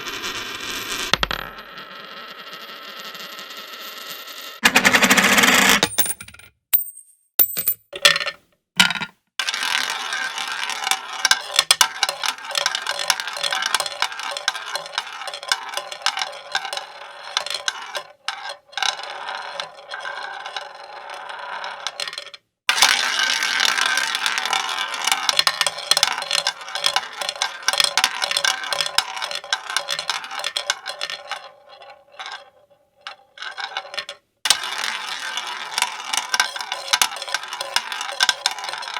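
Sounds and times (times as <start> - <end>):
coins clattering into metal tray: 5.6 - 9.9, 34.5 - 38.9.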